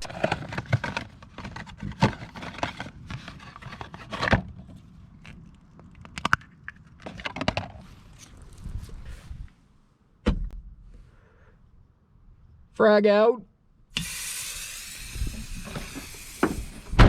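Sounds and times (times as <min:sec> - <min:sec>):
rustling and scraping: 0:00.0 - 0:09.8.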